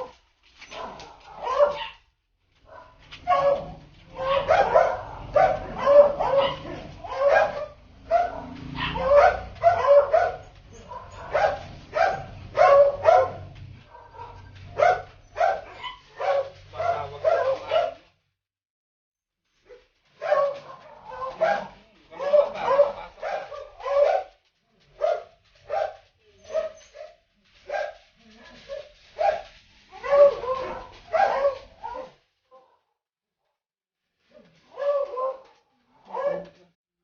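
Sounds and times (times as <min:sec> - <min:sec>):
dog barking: 0:00.0 - 0:18.2, 0:19.7 - 0:32.9, 0:34.7 - 0:36.7.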